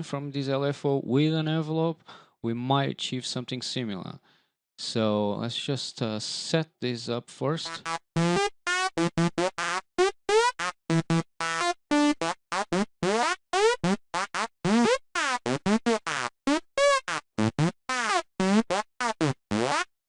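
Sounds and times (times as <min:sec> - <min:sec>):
synthesizer lead riff: 0:07.6 - 0:19.9.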